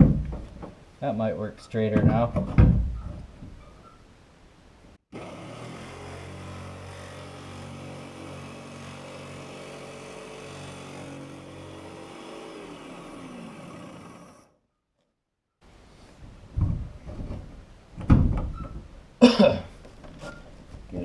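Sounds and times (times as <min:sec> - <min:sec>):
electric jigsaw cutting: 0:05.1 - 0:14.5.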